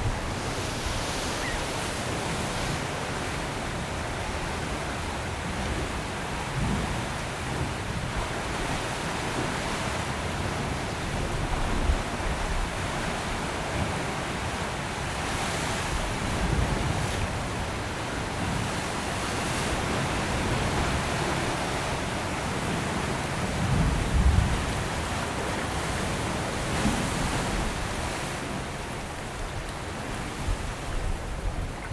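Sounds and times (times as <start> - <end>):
wind buffeting microphone: 0.0 - 4.5
ocean surf rushing: 0.0 - 5.3.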